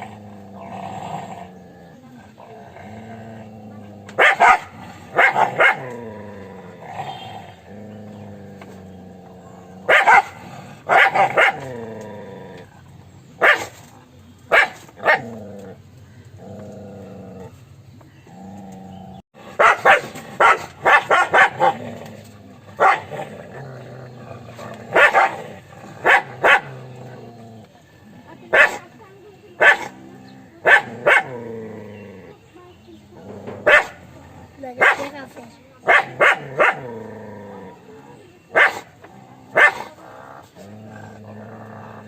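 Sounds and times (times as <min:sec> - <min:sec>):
dog growling: 0:00.0 - 0:13.4, 0:14.9 - 0:42.0
dog barking: 0:04.2 - 0:05.9, 0:09.9 - 0:11.7, 0:13.4 - 0:13.7, 0:14.5 - 0:15.3, 0:19.6 - 0:21.8, 0:22.8 - 0:23.1, 0:24.9 - 0:25.4, 0:26.0 - 0:26.7, 0:28.5 - 0:28.9, 0:29.6 - 0:30.0, 0:30.6 - 0:31.4, 0:33.6 - 0:34.0, 0:34.8 - 0:35.2, 0:35.8 - 0:36.9, 0:38.5 - 0:38.9, 0:39.6 - 0:39.9.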